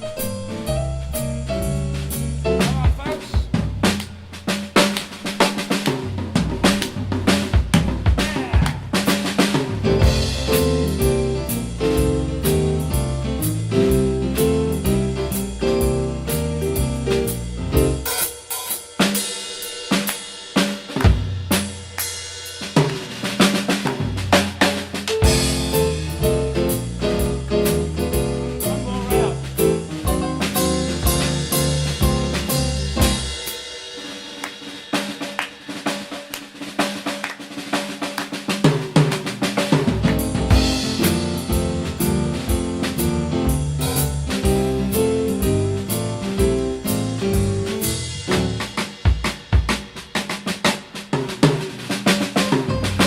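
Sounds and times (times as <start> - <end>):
drum solo: 0.0 - 53.0
jazz band playing: 0.0 - 53.0
keyboard chords: 9.9 - 18.2, 25.2 - 33.5, 40.0 - 48.8
walking bass line: 25.2 - 33.4, 40.0 - 48.8.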